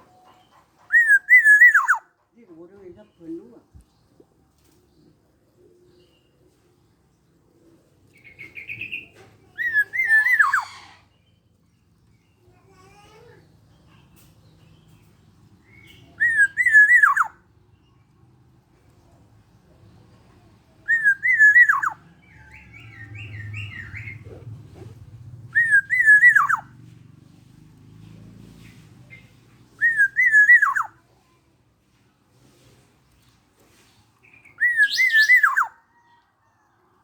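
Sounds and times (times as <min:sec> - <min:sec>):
oriole fluty whistled song: 0:00.9 - 0:02.0, 0:15.6 - 0:17.4, 0:20.9 - 0:24.2, 0:25.5 - 0:26.7, 0:29.8 - 0:31.0, 0:34.3 - 0:35.8.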